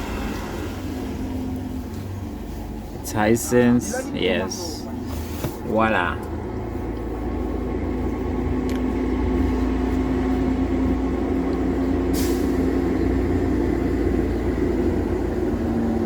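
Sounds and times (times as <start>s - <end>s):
machinery hum and rumble: 0.0s - 16.0s
short hiss: 12.1s - 12.6s.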